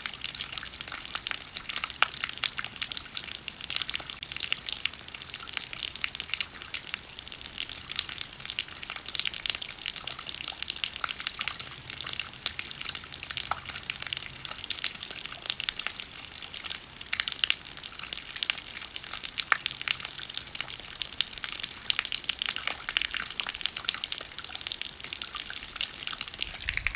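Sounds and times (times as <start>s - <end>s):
rain drops ticking: 0.0s - 26.9s
rain hiss: 24.6s - 26.9s.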